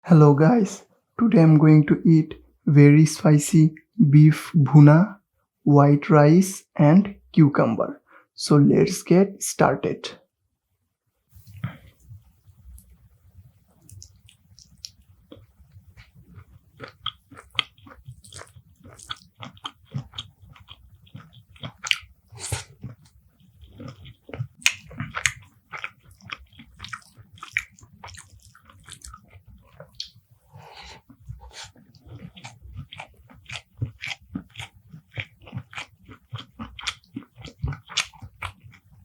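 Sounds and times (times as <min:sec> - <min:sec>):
food crunching: 0:13.7 - 0:39.0
wet chewing and lip smacking: 0:13.7 - 0:39.0.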